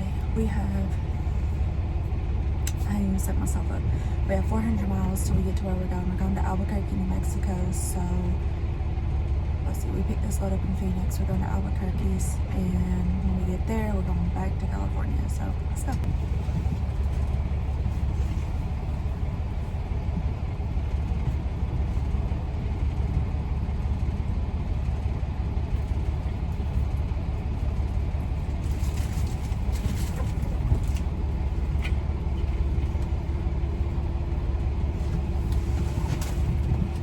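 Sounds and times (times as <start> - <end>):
truck engine rumble inside cab: 0.0 - 37.0
light clicks and rustles: 28.6 - 33.2.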